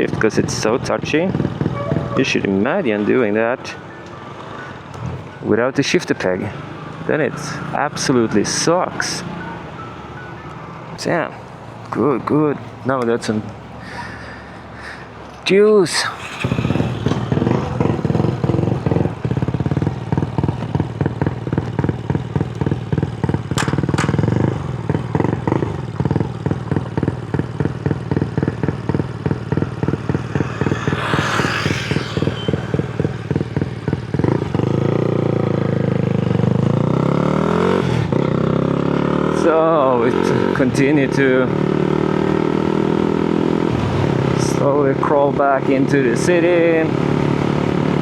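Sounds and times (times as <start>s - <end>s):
motorcycle engine running: 0.0s - 2.7s, 16.2s - 39.3s.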